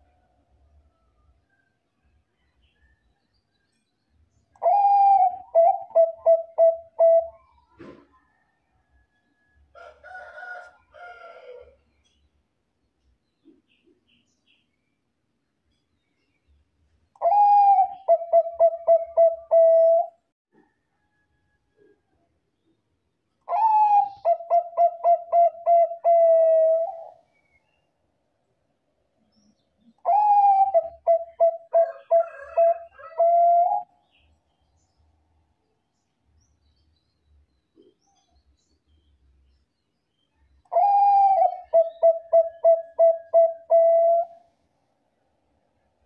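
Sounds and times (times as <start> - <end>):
dove cooing: 4.6 - 8.0, 17.2 - 20.2, 23.5 - 27.2, 30.0 - 33.9, 40.7 - 44.4.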